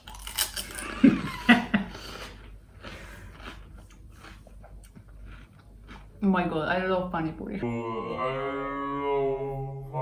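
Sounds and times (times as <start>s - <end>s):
faint crackly chewing: 1.9s - 6.3s.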